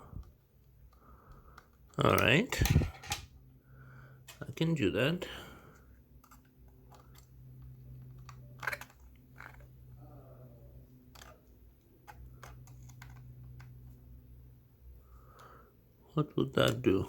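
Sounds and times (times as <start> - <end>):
tools clicking on plastic housing: 1.6 - 3.3, 6.2 - 9.7, 11.0 - 13.8.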